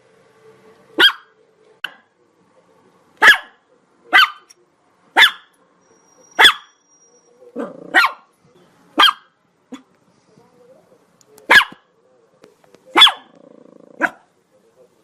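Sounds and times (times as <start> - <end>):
small dog barking: 1.0 - 2.1, 3.2 - 4.5, 5.1 - 5.6, 6.4 - 6.8, 7.5 - 8.3, 9.0 - 10.0, 11.4 - 11.9, 12.9 - 13.4, 14.0 - 14.3.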